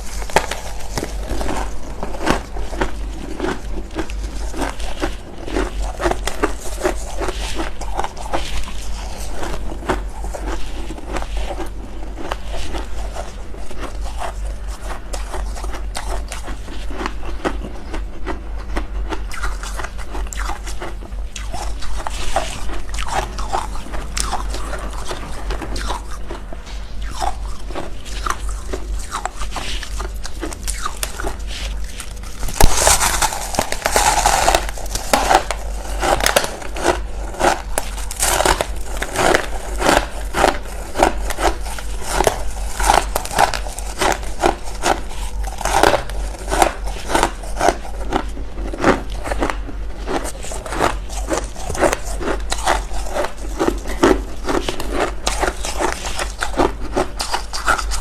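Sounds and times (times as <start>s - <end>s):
frost being chewed: 0.0s - 58.0s
low hum: 0.0s - 58.0s.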